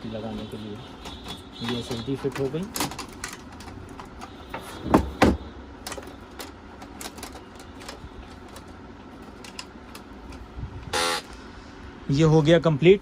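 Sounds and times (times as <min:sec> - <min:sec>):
light clicks of metal and plastic: 0:01.0 - 0:04.3
solid knocks on computer case: 0:04.8 - 0:05.5.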